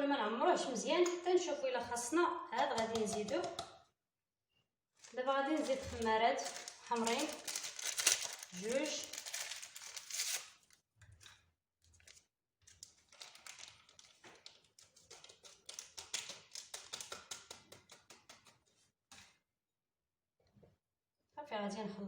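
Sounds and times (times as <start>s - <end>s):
paper sachets rustling: 5.0s - 10.6s, 12.8s - 17.3s.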